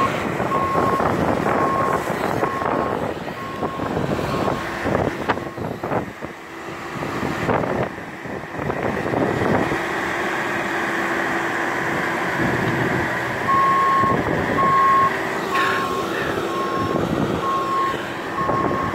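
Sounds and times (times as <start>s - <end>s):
heavy vehicle engine running: 0.0s - 18.9s
reverse alarm beeping: 13.5s - 18.9s.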